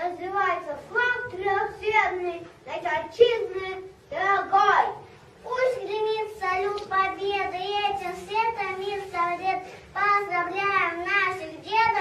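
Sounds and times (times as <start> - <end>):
child singing in high voice: 0.0 - 12.0.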